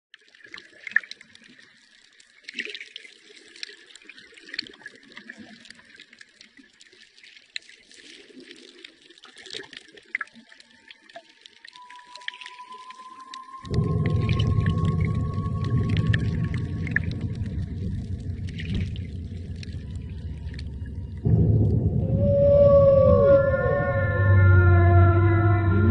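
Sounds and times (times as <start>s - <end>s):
crackles and clicks: 0.1s - 25.9s
water: 0.1s - 25.9s
drawn-out rising tone: 12.6s - 25.9s.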